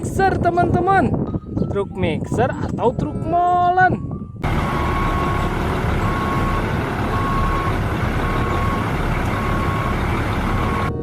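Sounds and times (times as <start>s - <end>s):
truck engine rumble: 4.1s - 11.0s
truck reversing alarm beeping: 4.4s - 11.0s.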